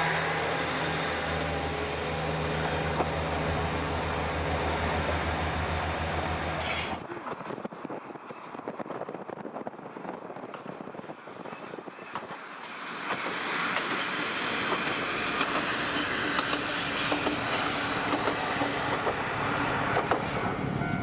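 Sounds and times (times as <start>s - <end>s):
railcar wheels clicking over rail joints: 0.0s - 7.0s, 11.6s - 20.8s.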